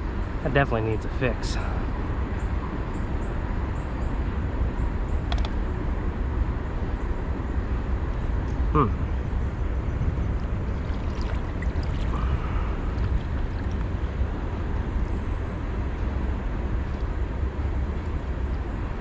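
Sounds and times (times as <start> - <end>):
outdoor rumble and hiss: 0.0 - 19.0
light clicks: 5.3 - 5.6
water gurgling around kayak: 9.8 - 14.2.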